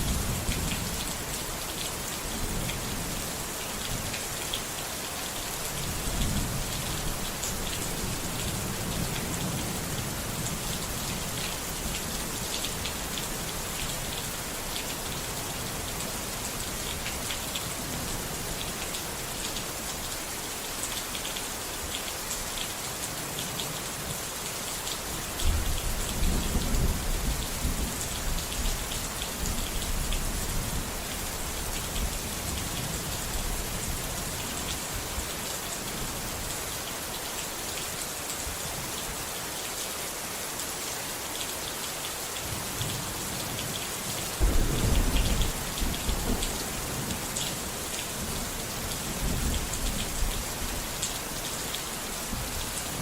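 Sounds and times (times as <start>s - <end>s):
steady rain falling: 0.0s - 53.0s
thunder rumbling: 44.4s - 47.3s.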